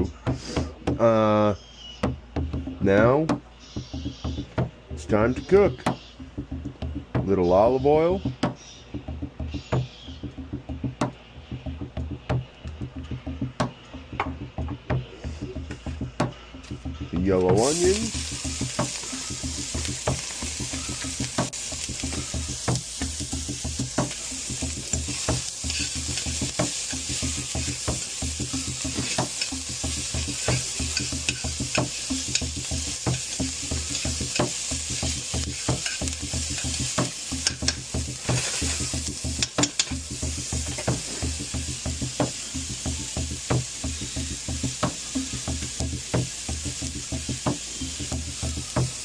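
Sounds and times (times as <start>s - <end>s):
onions sizzling in oil: 16.6s - 49.0s
utensil scraping a pan: 28.7s - 40.0s.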